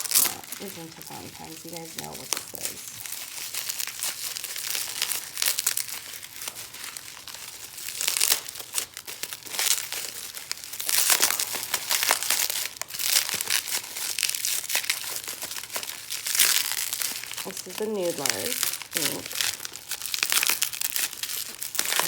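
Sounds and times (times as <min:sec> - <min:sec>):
packaging crinkling and rustling: 0:00.0 - 0:22.0
packaging tearing: 0:00.0 - 0:22.0.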